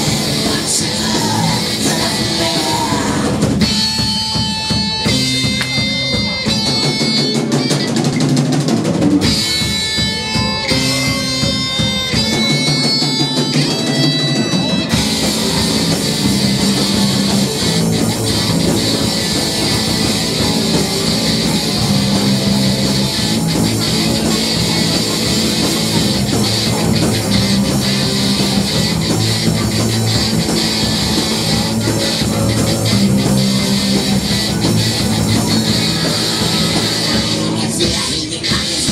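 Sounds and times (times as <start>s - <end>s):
rock band playing live: 0.0s - 38.9s.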